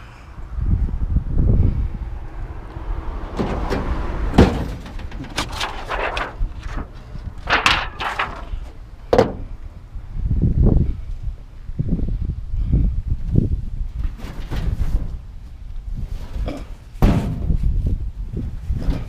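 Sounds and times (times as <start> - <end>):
sheet metal clanking and banging: 3.3 - 9.6.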